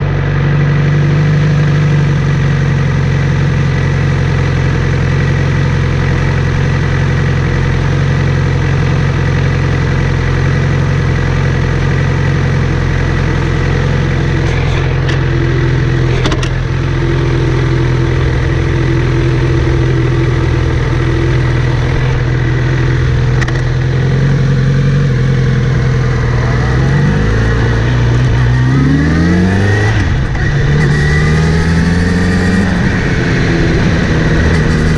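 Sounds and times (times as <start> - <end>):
motorcycle engine running: 0.0 - 34.9
buzzing whir: 13.6 - 24.4, 25.7 - 34.9.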